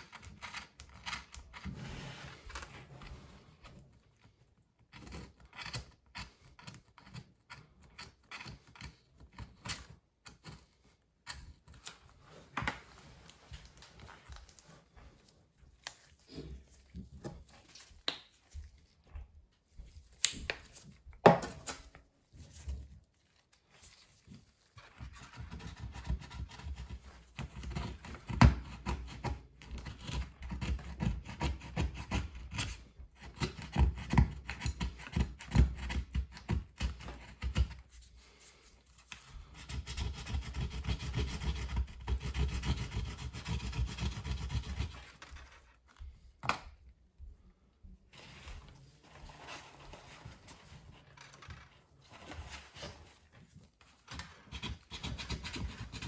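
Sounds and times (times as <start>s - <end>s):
scraping inside a laptop case: 1.6s - 3.8s.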